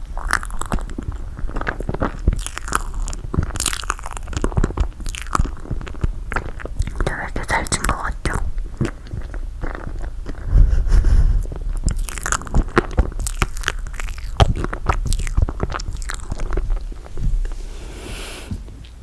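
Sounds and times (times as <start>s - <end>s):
sticky chewing mouth sounds: 0.0s - 19.0s.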